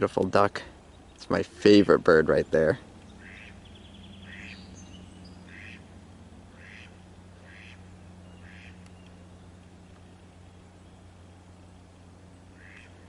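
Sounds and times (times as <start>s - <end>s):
duck honking: 3.2s - 3.6s, 4.2s - 4.6s, 5.5s - 5.9s, 6.5s - 7.8s, 8.4s - 8.8s, 12.6s - 13.0s.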